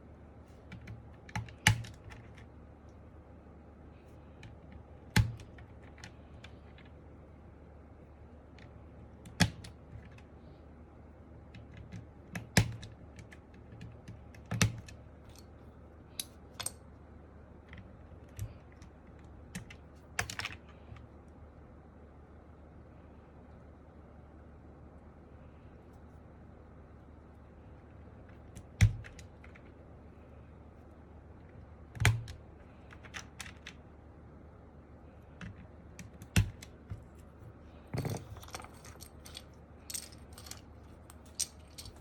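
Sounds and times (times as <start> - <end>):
mechanical keyboard keys clacking: 11.6 - 15.0, 32.0 - 33.8, 35.4 - 37.0.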